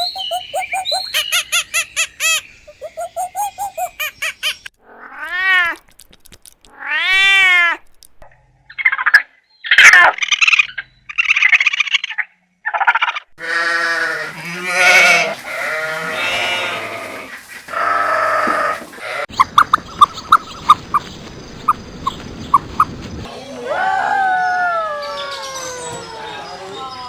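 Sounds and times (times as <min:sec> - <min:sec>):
animals bleating: 0:13.4 - 0:19.3.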